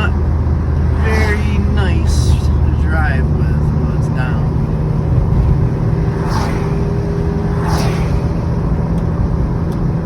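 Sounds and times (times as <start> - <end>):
car engine and road noise: 0.0 - 10.0
brief falling whooshes: 5.4 - 8.7.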